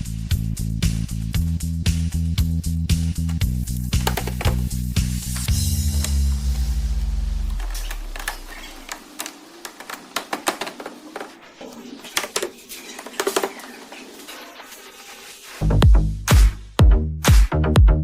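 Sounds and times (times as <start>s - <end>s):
background music: 0.0s - 7.8s, 15.6s - 18.0s.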